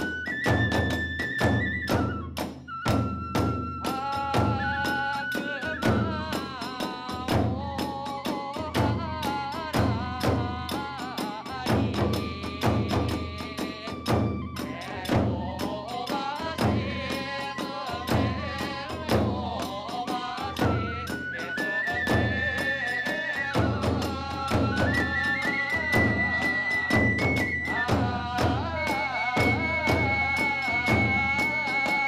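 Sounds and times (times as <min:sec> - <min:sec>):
bamboo flute melody: 0:00.0 - 0:32.0
drum strikes: 0:05.7 - 0:21.3, 0:23.0 - 0:32.0.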